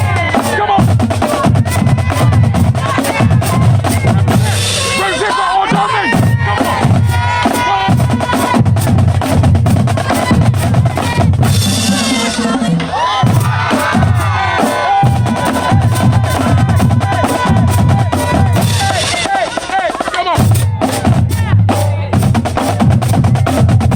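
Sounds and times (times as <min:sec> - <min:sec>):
marching drumline cadence: 0:00.0 - 0:23.9.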